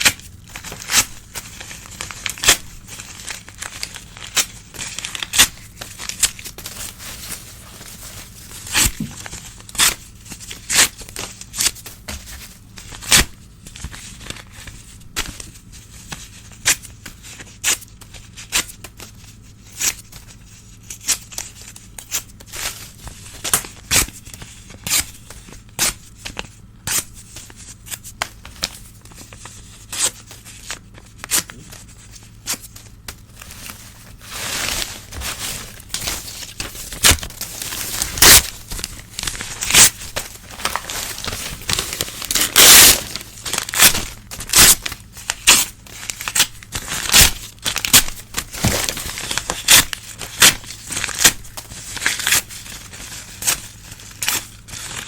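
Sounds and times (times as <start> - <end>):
newspaper ripping: 0.0 - 14.4, 28.6 - 55.0
paper crinkling: 0.0 - 55.0.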